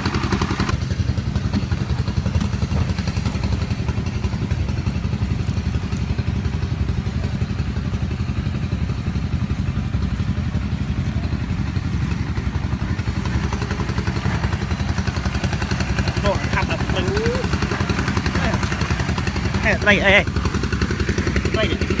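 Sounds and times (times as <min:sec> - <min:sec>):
small engine running: 0:00.0 - 0:22.0.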